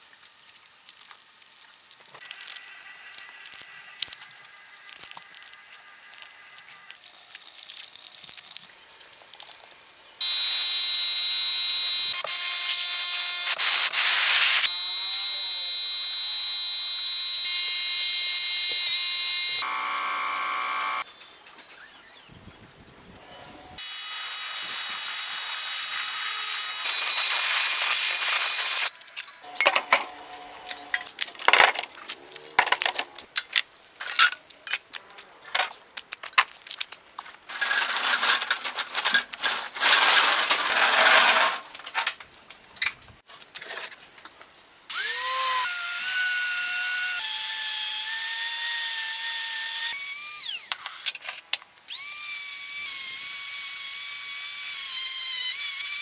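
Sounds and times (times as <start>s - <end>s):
electric power tool running: 10.2s - 21.0s, 23.8s - 29.6s, 44.9s - 51.0s, 51.9s - 56.0s
metal parts clicking and knocking: 26.8s - 44.2s.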